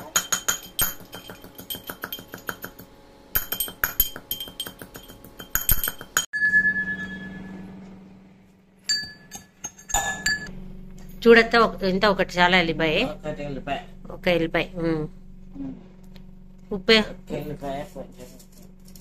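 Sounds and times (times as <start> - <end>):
rapid light clinking: 0.1 - 6.3
ringing tone: 3.4 - 7.8, 8.9 - 10.5.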